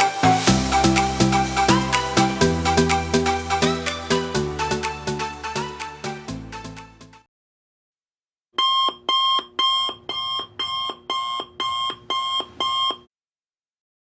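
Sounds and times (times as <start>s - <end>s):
electronic alarm beeping: 8.6s - 13.1s.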